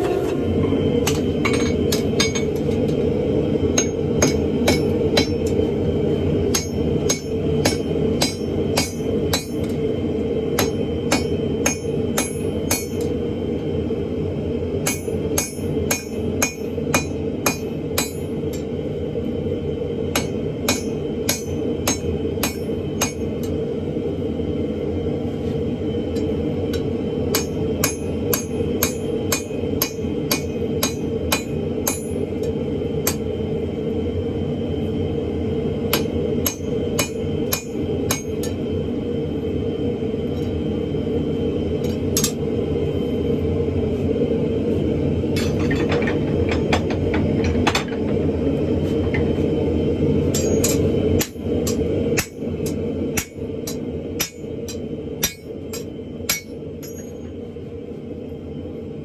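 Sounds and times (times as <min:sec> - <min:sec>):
forge running: 0:00.0 - 0:57.9
hammer striking metal on anvil: 0:01.0 - 0:03.0, 0:03.7 - 0:05.6, 0:06.5 - 0:09.8, 0:10.6 - 0:13.1, 0:14.8 - 0:18.7, 0:20.1 - 0:23.6, 0:26.1 - 0:33.3, 0:35.9 - 0:38.6, 0:41.8 - 0:42.4, 0:45.4 - 0:48.0, 0:50.3 - 0:57.3.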